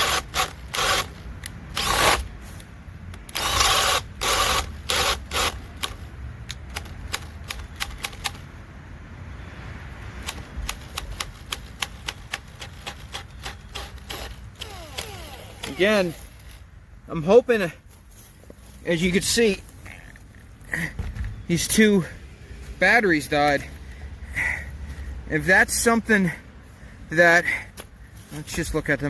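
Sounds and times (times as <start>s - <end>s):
cordless drill boring: 0.0s - 2.3s, 3.3s - 6.0s, 12.8s - 16.6s.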